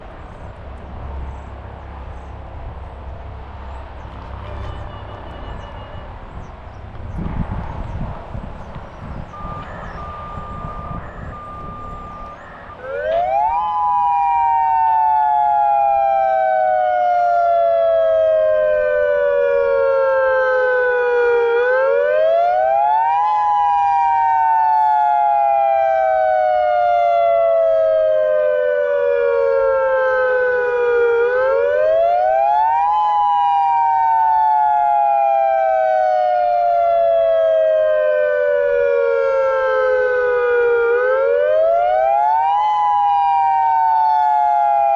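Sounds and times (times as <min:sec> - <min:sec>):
dual-tone warning siren: 0:04.0 - 0:44.9
steady beeping: 0:09.1 - 0:13.2.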